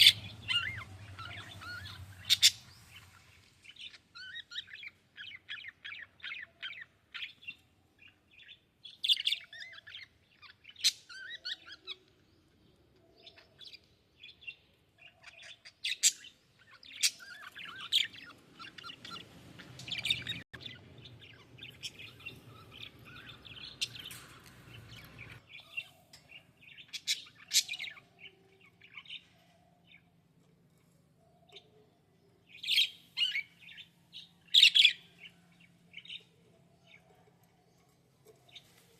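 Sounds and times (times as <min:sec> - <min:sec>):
small parrots chirping: 0:00.0 - 0:12.0, 0:15.0 - 0:26.0, 0:26.7 - 0:30.0, 0:32.5 - 0:36.4.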